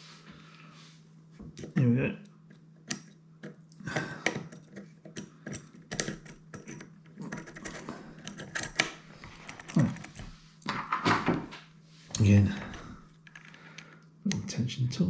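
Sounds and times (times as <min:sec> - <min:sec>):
low steady hum: 0:00.0 - 0:15.0
lock pick metal clicks and scrapes: 0:04.5 - 0:10.2.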